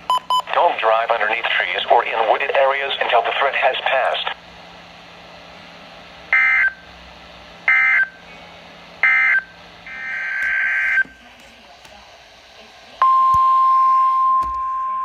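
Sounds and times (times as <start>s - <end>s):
radio hiss: 0.5s - 4.4s.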